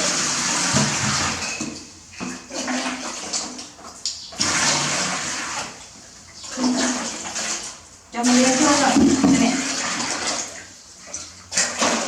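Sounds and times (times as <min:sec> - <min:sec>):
bath water rushing and splashing: 0:00.0 - 0:12.0.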